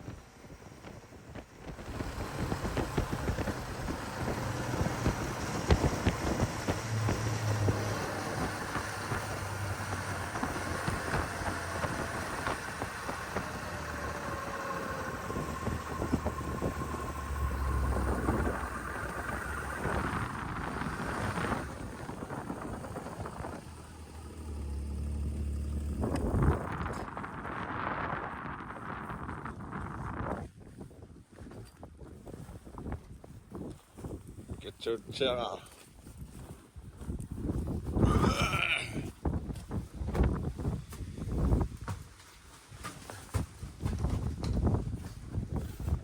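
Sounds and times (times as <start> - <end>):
vehicle engine hum: 0.0 - 30.3
wind on microphone: 0.0 - 35.2, 35.8 - 42.1, 42.8 - 46.0.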